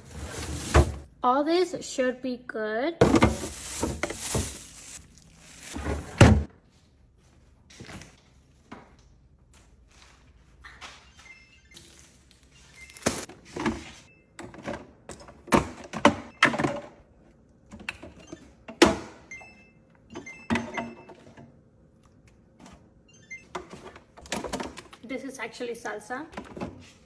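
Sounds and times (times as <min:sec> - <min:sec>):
food containers set down: 0:03.0 - 0:06.5.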